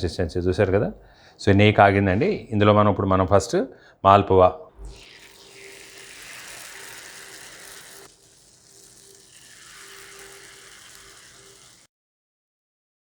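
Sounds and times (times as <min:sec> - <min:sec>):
batter sizzling in hot oil: 0:04.9 - 0:11.9.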